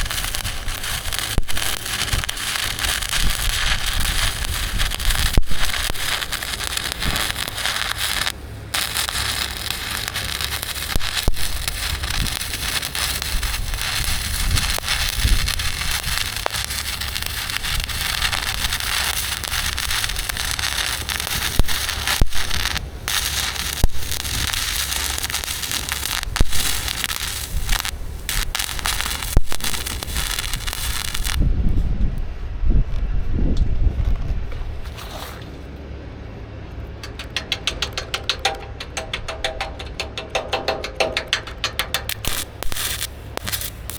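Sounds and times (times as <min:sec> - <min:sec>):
welding arc crackling: 0:00.0 - 0:31.4, 0:37.0 - 0:43.9.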